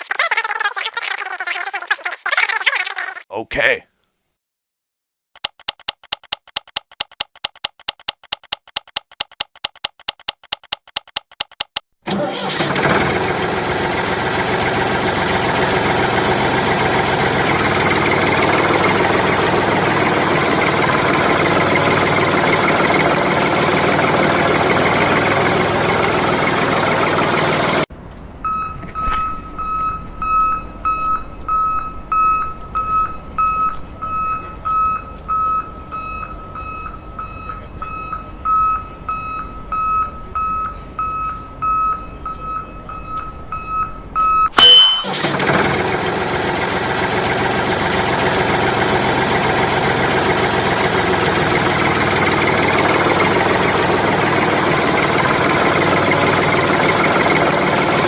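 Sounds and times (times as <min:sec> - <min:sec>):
small engine running: 0:12.1 - 0:27.8, 0:45.1 - 0:58.0.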